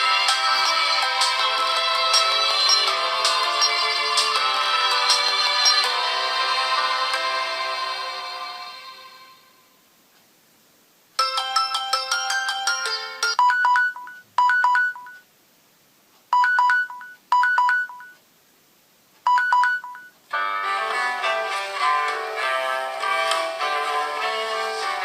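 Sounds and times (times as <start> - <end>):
fuller phone ringtone melody: 0.0 - 6.0, 11.2 - 15.2, 16.4 - 18.2, 19.3 - 21.6
electronic ringtone: 2.1 - 5.9, 11.2 - 15.2, 16.4 - 18.2, 19.3 - 20.1.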